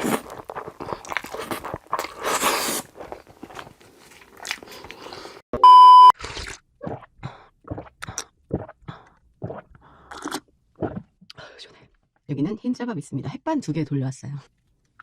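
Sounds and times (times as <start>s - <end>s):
close chewing of food: 0.0s - 11.1s
loud electronic beep: 5.6s - 6.1s.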